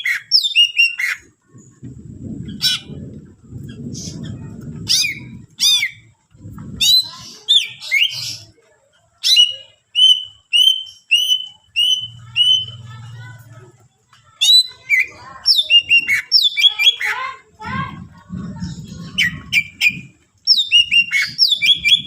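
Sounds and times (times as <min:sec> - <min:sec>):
bird singing whistled notes: 0:00.0 - 0:01.2, 0:09.2 - 0:12.9, 0:14.4 - 0:17.0, 0:19.2 - 0:22.0.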